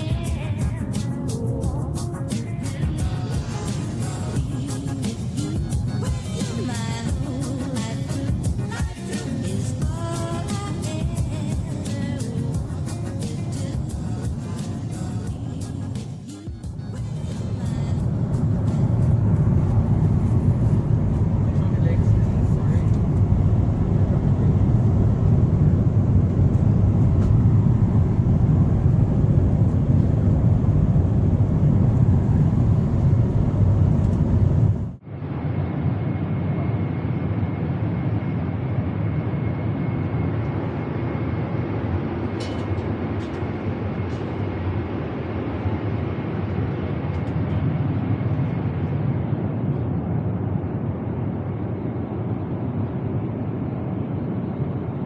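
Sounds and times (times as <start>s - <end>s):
airliner cabin rumble: 0.0s - 35.0s.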